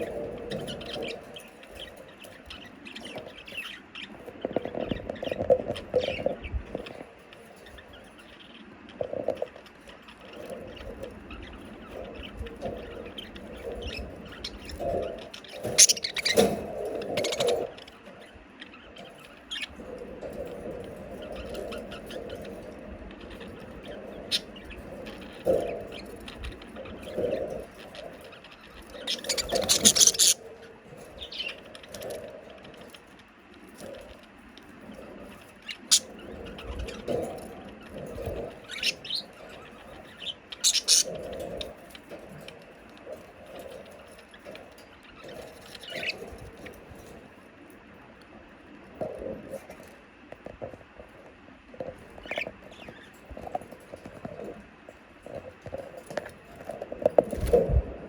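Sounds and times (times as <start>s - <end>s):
bird chirp: 0.0s - 34.2s, 34.9s - 47.1s
budgerigars chattering: 9.4s - 19.9s, 21.2s - 32.8s, 35.4s - 41.9s, 45.1s - 46.7s
budgerigar chirp: 13.8s - 16.6s, 29.0s - 30.4s, 40.1s - 41.1s
small taps and scratches: 55.3s - 57.8s.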